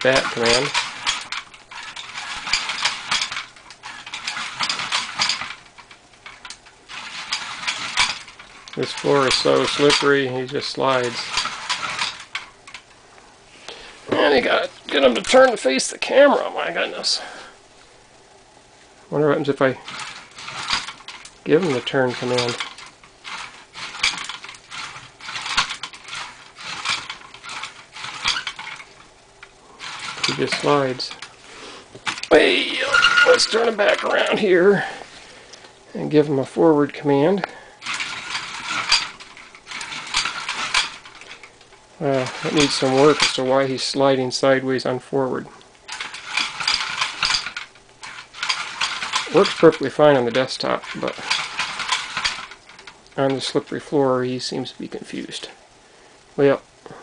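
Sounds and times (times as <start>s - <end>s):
robot gears clicking and clattering: 0.0s - 13.0s, 19.5s - 31.4s, 32.0s - 34.7s, 37.4s - 43.6s, 45.9s - 53.8s.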